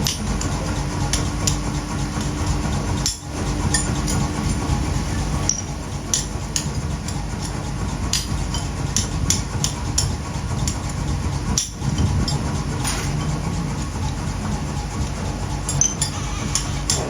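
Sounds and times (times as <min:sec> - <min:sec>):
workshop machinery rumbling: 0:00.0 - 0:17.0
metallic clinks and taps: 0:11.6 - 0:13.5, 0:15.7 - 0:17.0.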